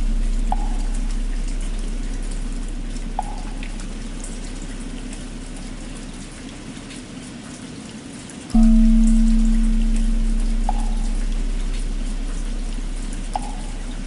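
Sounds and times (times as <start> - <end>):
struck bell humming: 0.0 - 4.0, 8.6 - 14.0
steady rain: 0.0 - 14.0.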